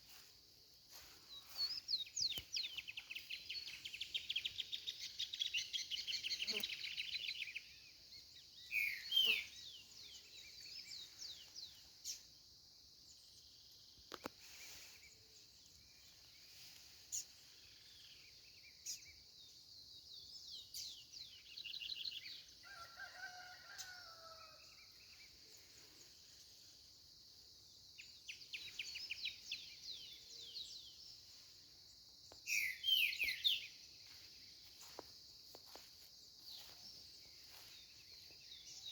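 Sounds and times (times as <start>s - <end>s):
steady high-pitched hiss: 0.0s - 22.8s, 23.5s - 38.9s
songbirds trilling: 1.0s - 12.4s, 13.1s - 38.9s
distant rooster crowing: 22.6s - 24.9s.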